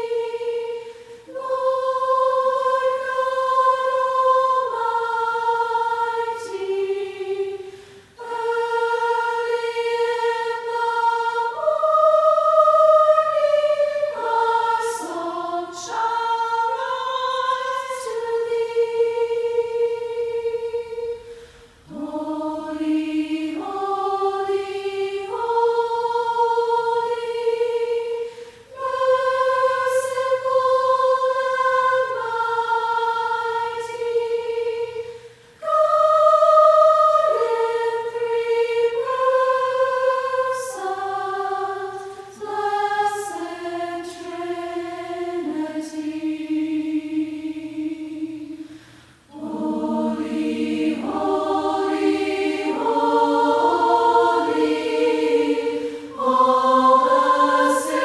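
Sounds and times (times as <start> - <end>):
voices singing a hymn: 0.0 - 58.0
singers breathing: 0.8 - 1.4, 7.6 - 8.2, 21.2 - 21.9, 28.2 - 28.8, 35.0 - 35.6, 48.6 - 49.3, 55.8 - 56.2.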